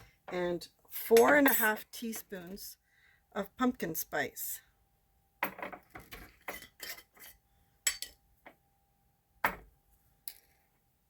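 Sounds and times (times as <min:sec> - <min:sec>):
spoon clinking against jar and bowl: 0:06.5 - 0:08.2.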